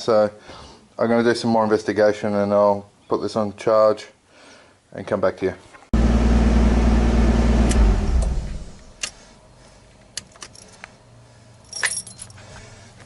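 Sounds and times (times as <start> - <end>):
metal jingle: 11.6 - 12.4.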